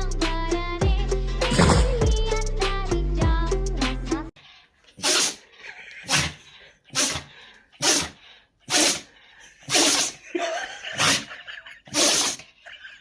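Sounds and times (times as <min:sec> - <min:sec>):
dog sneezing: 0:05.0 - 0:10.3, 0:11.0 - 0:11.3, 0:11.9 - 0:12.6.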